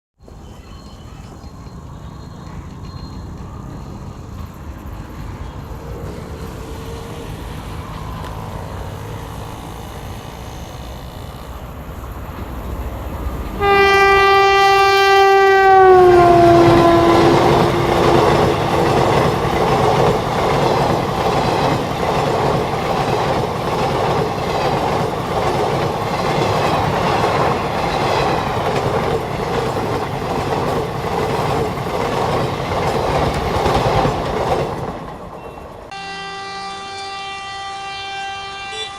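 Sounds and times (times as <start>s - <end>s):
locomotive rumble: 0.2s - 35.9s
train air horn blast: 13.6s - 18.9s, 35.9s - 38.9s
wheel clatter over rail joints: 16.3s - 35.9s.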